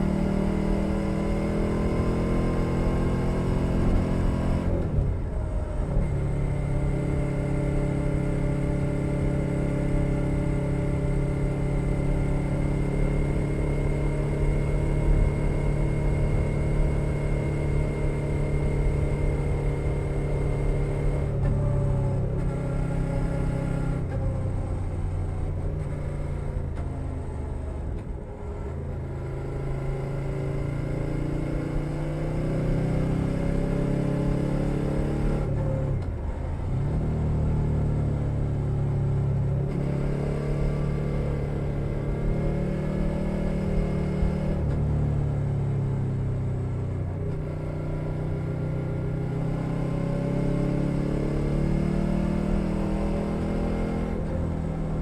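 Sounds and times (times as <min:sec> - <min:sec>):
motorcycle engine running: 0:00.0 - 0:23.5.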